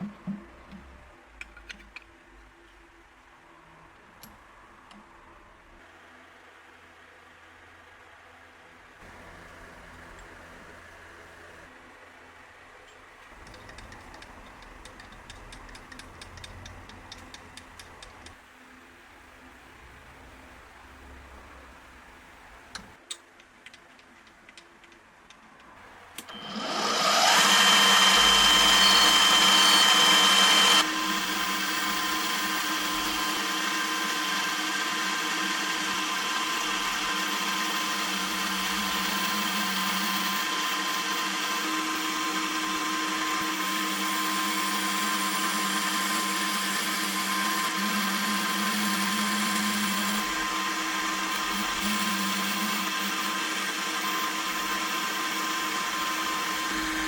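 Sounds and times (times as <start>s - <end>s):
milling machine whine: 26.2s - 57.0s.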